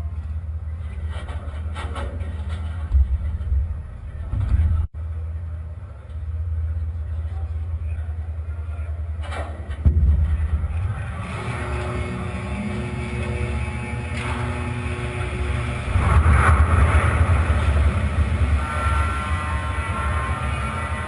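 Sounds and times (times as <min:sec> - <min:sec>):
ship launching rumble: 0:09.8 - 0:21.0.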